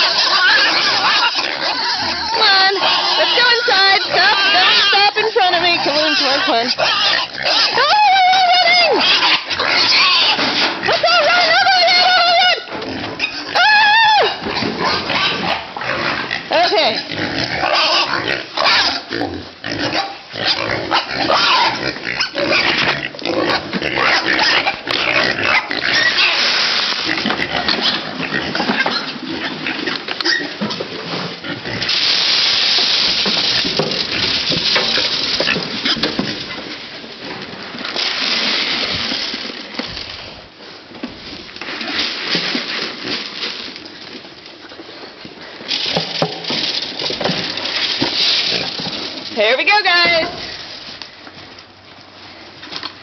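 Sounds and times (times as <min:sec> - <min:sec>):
piglets squealing and grunting: 0:00.0 - 0:30.6.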